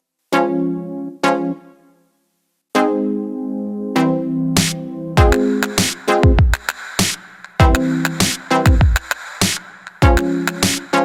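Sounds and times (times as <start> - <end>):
snare or clap hits: 4.6 - 11.0
deep kick drums: 5.2 - 5.4, 6.2 - 6.6, 7.6 - 7.9, 8.7 - 9.0, 10.0 - 10.3.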